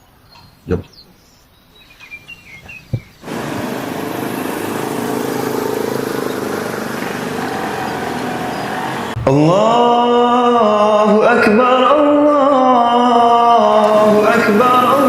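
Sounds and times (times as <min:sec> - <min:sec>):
vehicle engine and road noise: 0:02.4 - 0:09.8
knock: 0:02.9 - 0:03.1.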